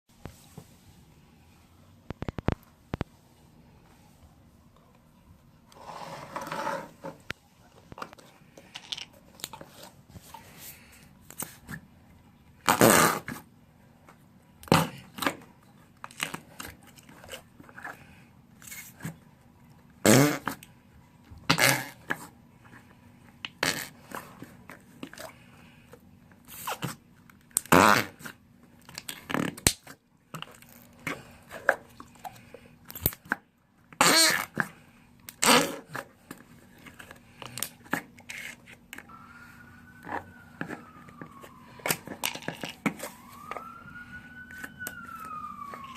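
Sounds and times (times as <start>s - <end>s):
slime squishing fart noises: 12.6s - 13.4s, 20.0s - 20.7s, 21.4s - 22.3s, 23.5s - 24.4s, 27.6s - 28.4s, 29.0s - 29.8s, 34.0s - 36.1s.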